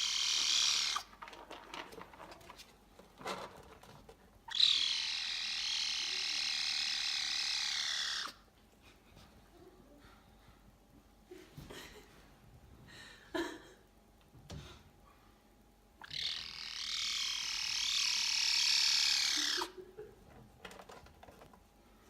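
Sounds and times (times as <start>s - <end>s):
cat crying raspy high-pitched: 0.0s - 1.1s, 4.5s - 8.4s, 16.0s - 19.8s
small cat squeaking: 0.0s - 1.1s, 4.5s - 8.4s, 16.0s - 19.7s.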